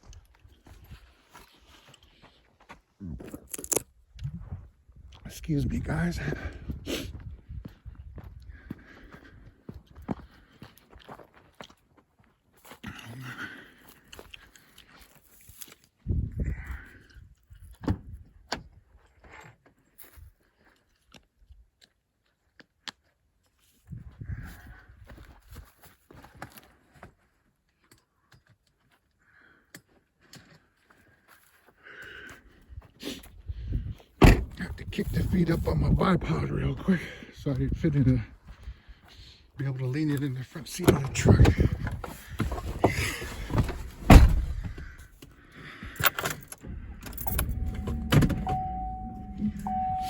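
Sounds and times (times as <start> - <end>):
heavy thump: 34.2 - 34.6, 42.8 - 44.9, 47.2 - 49.7
steady high electronic tone: 47.3 - 50.0.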